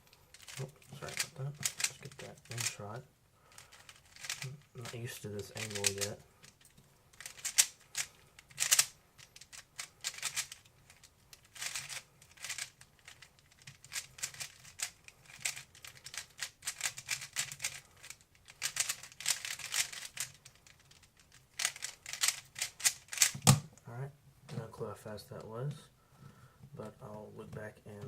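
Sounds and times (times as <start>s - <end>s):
puzzle cube clicking: 0.3s - 2.8s, 3.6s - 5.0s, 5.6s - 23.8s.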